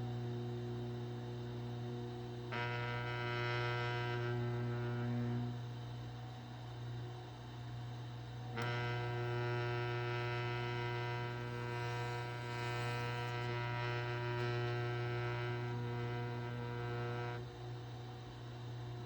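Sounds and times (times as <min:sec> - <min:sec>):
electric motor whining: 0:01.8 - 0:05.8, 0:08.6 - 0:17.5.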